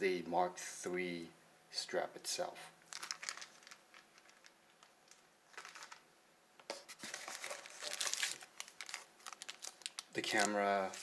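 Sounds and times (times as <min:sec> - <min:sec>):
packaging rustling and clicking: 0:02.9 - 0:06.0, 0:06.8 - 0:11.0.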